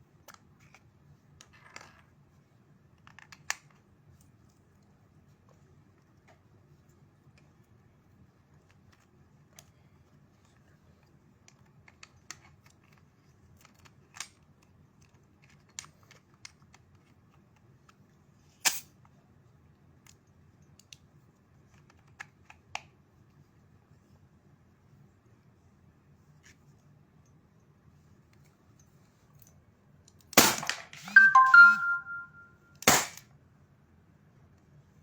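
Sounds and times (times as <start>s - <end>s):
small clicks and taps: 10.4s - 18.1s, 20.0s - 23.0s
loud sharp snap: 32.8s - 33.2s.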